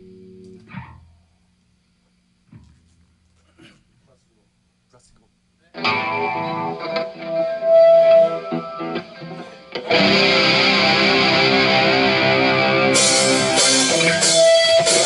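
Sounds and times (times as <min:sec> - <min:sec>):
distorted electric guitar: 0:00.0 - 0:01.3, 0:05.8 - 0:15.0
bass guitar: 0:00.0 - 0:01.5, 0:02.5 - 0:03.5, 0:05.8 - 0:15.0
drums: 0:08.2 - 0:15.0
cymbals: 0:12.9 - 0:15.0.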